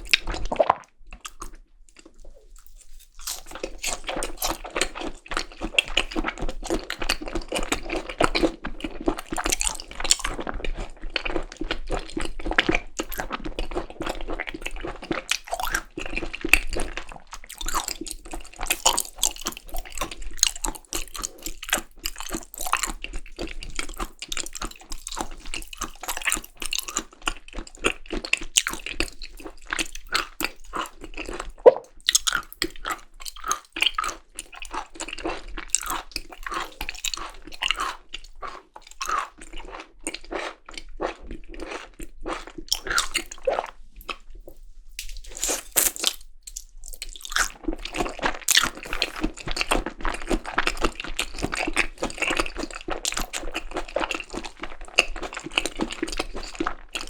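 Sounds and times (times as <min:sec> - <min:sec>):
wet chewing mouth sounds: 0:00.0 - 0:57.0
mouth clicks and smacks: 0:31.5 - 0:32.7.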